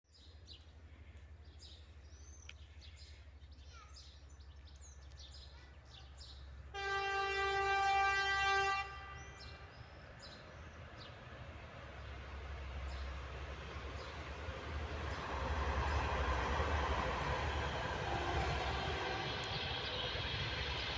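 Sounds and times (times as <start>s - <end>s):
train rumble: 6.0s - 20.9s
diesel locomotive horn blast: 6.7s - 9.8s, 17.8s - 19.7s.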